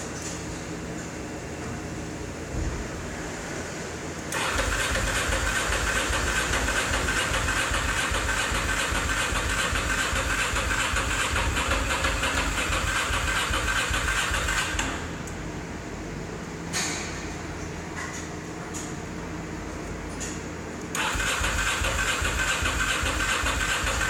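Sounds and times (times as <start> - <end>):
starter motor cranking: 4.3 - 14.9, 21.0 - 24.0.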